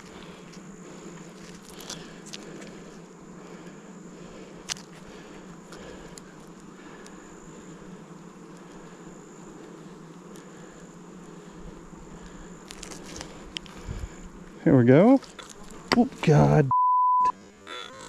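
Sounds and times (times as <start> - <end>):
honeybees buzzing: 0.0 - 18.0.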